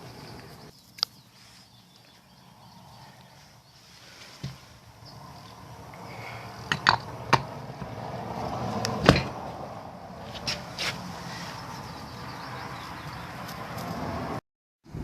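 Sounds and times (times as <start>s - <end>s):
metal taps and knocks: 6.7s - 7.9s.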